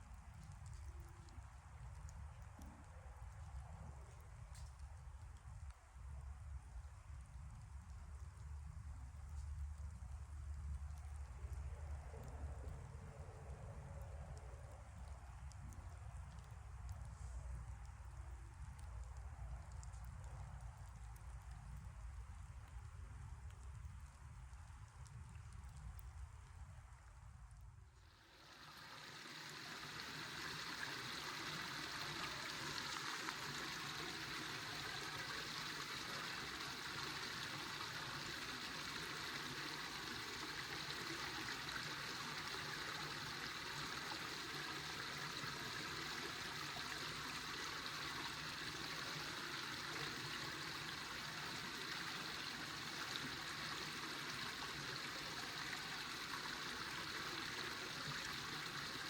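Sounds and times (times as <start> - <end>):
river water rushing: 28.2 - 59.0.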